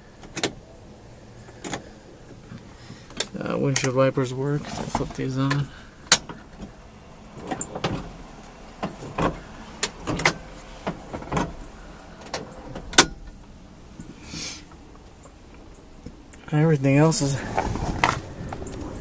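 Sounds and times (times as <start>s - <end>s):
wiper blades clicking and knocking: 0.1s - 19.0s
wiper motor running: 4.4s - 16.3s.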